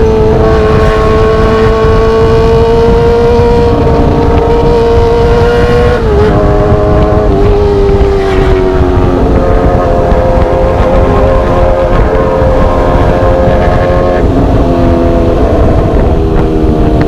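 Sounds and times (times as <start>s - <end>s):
motorcycle engine at high revs: 0.0s - 17.0s
wind rumble on microphone: 0.0s - 17.0s.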